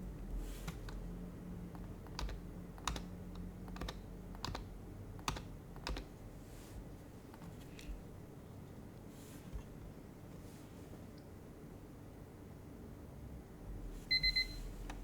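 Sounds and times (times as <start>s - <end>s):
soft keyboard keystrokes: 0.6s - 1.1s, 1.7s - 6.2s.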